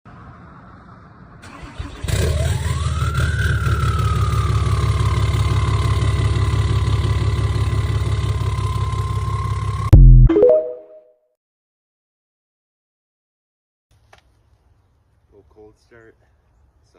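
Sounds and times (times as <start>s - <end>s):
engine whine: 0.1s - 10.1s
pickup engine cranking: 1.4s - 2.6s.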